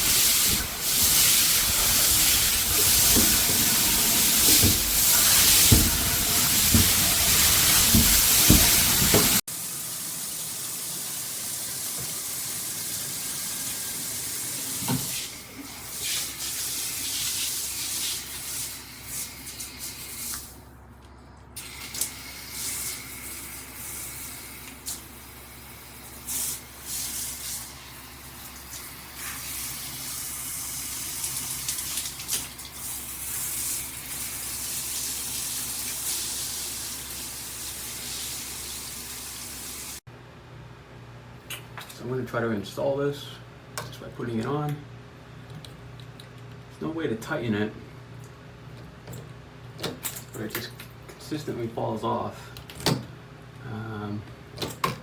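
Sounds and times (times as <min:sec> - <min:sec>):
water spraying from shower head: 0:00.0 - 0:20.6, 0:21.6 - 0:40.0.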